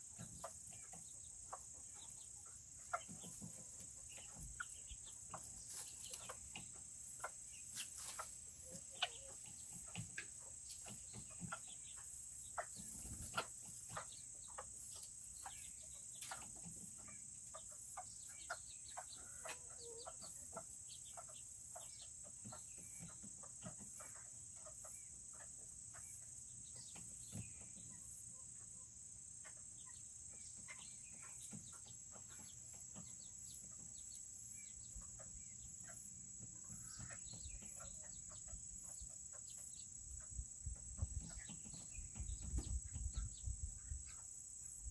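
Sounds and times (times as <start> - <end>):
chickens clucking: 0.0 - 44.9.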